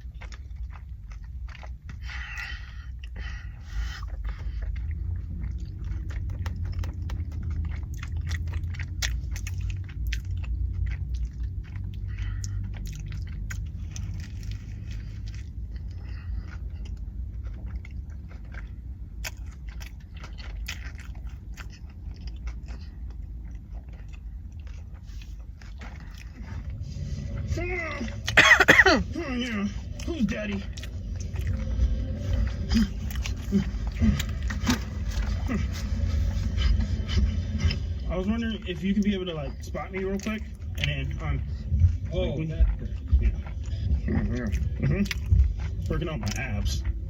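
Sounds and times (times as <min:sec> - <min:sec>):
person chewing food: 0:00.0 - 0:47.0
mouth clicks and smacks: 0:04.1 - 0:14.4.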